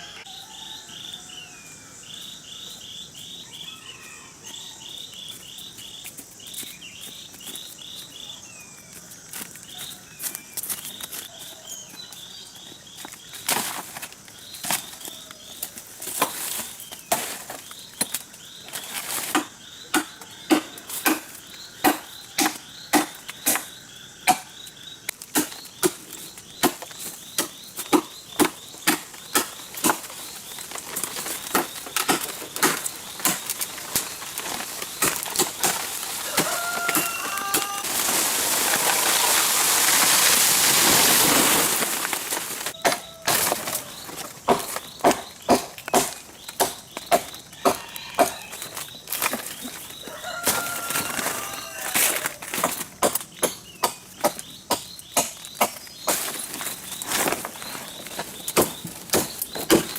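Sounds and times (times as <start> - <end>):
rustling chopping strokes through stalks: 25.2 - 49.8.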